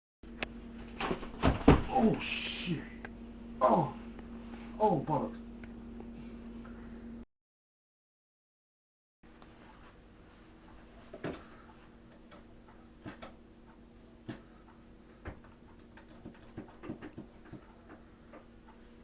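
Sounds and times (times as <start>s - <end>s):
low steady hum: 0.3s - 7.2s, 9.3s - 19.0s
kitchen knocks and clicks: 16.2s - 18.0s.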